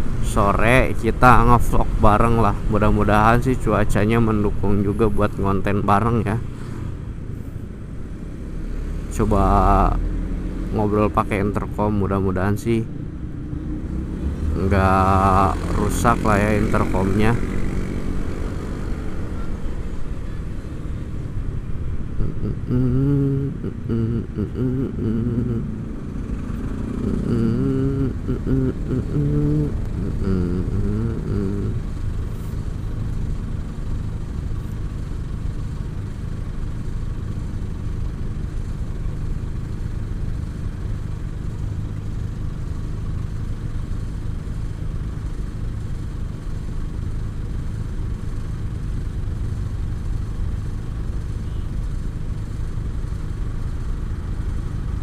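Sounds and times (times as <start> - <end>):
scooter engine rumbling: 9.2 - 55.0
person humming a tune: 22.2 - 26.0, 27.0 - 31.9.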